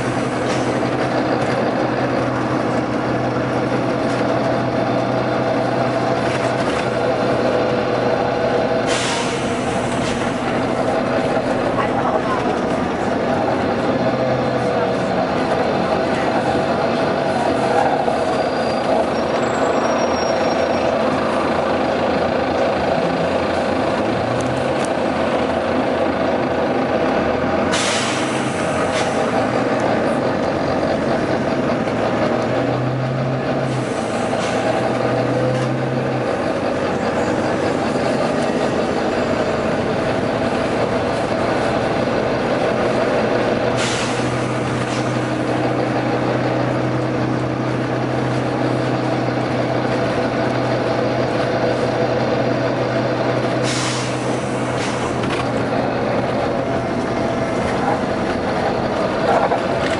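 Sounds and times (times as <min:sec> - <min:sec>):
bus diesel engine running: 0:00.0 - 0:59.9
air brake hiss: 0:08.8 - 0:10.4, 0:27.7 - 0:29.3, 0:43.8 - 0:45.1, 0:53.6 - 0:55.2.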